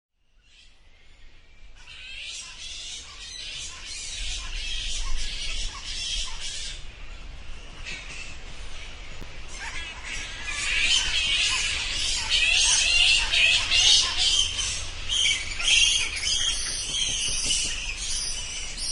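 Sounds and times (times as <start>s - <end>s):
bats squeaking and chittering: 1.8s - 6.8s, 9.5s - 18.9s.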